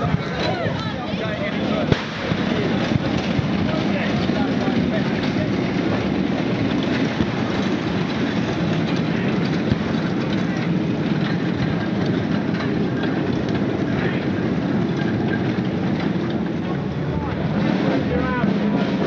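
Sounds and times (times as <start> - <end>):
street crowd noise with voices: 0.0 - 19.0
sharp cracks: 1.8 - 11.6.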